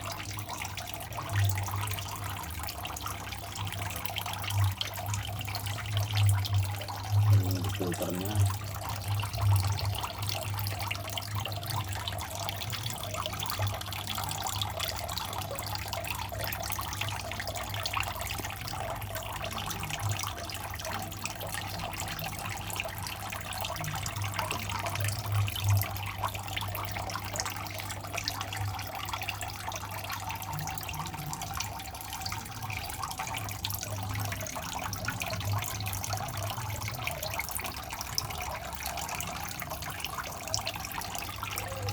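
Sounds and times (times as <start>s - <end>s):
low pump hum: 0.0s - 41.9s
water trickling and splashing: 0.0s - 41.9s.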